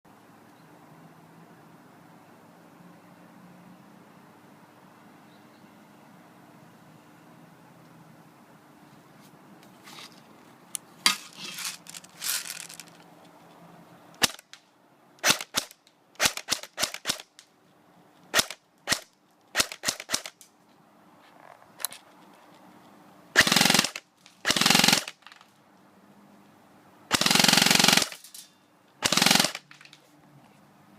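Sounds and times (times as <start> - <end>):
airsoft gun firing: 15.2 - 17.3, 18.3 - 20.4, 23.4 - 25.3, 27.1 - 28.2, 29.0 - 29.7.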